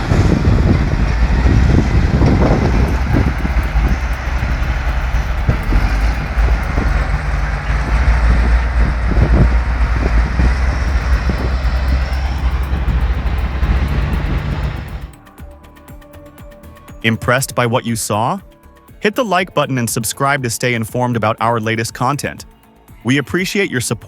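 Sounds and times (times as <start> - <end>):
heavy machinery engine rumble: 0.0 - 15.2
knocks and clanks: 2.9 - 9.4.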